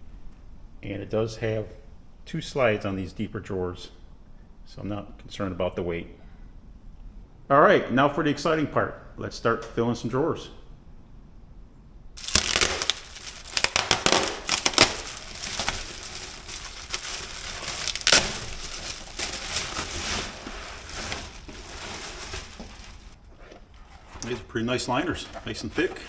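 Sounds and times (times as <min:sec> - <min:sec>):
rubbery liner crinkling: 0:12.2 - 0:26.0.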